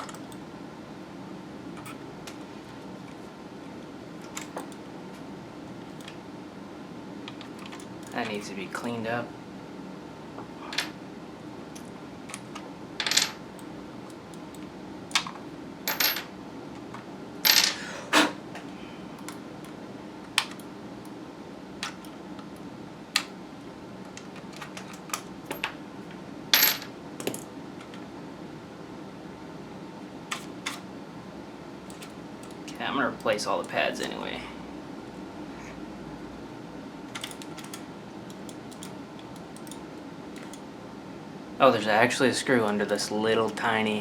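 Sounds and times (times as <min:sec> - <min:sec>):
small parts clicking and clinking: 0:37.1 - 0:39.8.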